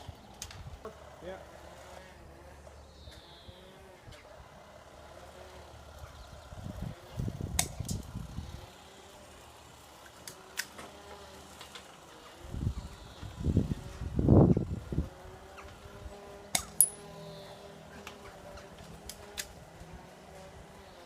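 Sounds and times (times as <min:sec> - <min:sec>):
airsoft pistol snaps: 0:07.6 - 0:08.0, 0:16.5 - 0:17.0.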